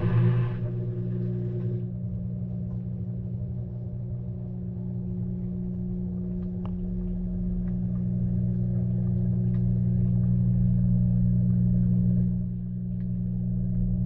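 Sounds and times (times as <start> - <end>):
washing machine drum hum: 0.0 - 14.0.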